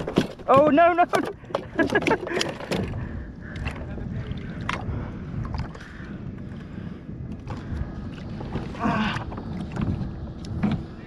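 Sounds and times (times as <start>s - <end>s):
handling clicks and knocks: 0.0s - 2.9s
wind buffeting microphone: 0.0s - 11.0s.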